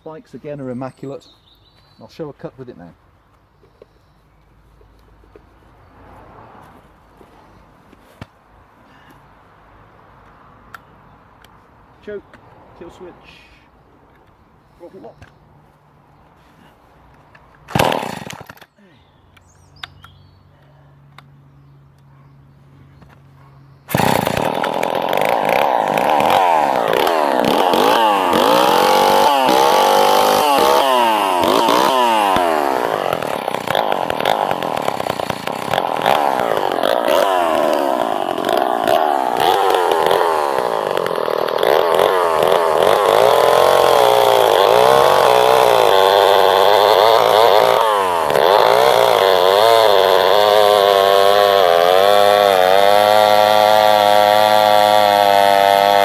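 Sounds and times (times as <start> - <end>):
chainsaw revving: 17.7 - 18.7, 23.9 - 56.0.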